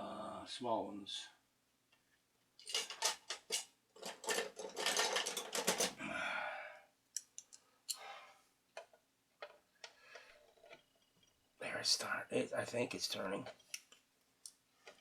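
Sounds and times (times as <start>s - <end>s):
pliers clicking on metal: 7.1s - 8.0s.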